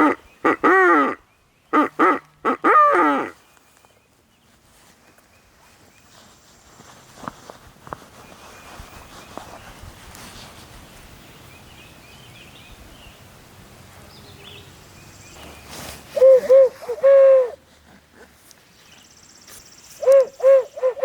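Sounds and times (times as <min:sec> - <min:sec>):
owl call hooting: 0:00.0 - 0:03.4, 0:16.1 - 0:17.6, 0:20.0 - 0:21.0.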